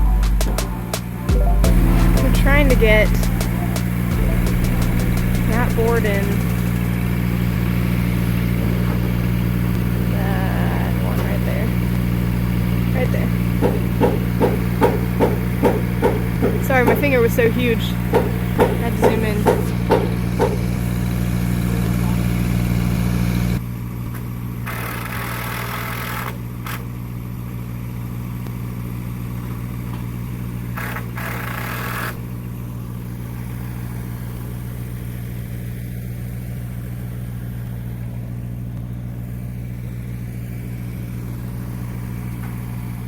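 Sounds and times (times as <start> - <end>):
engine idling: 0.0 - 43.0.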